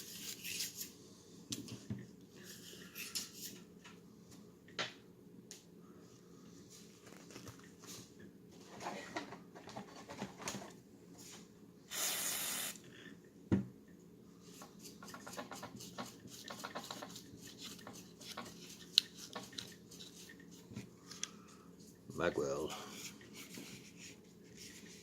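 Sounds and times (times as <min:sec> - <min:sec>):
aerosol spray hiss: 0:11.9 - 0:12.8.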